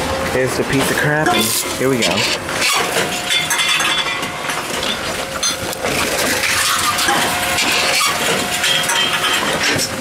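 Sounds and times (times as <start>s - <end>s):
vending machine motor running: 0.0s - 10.0s.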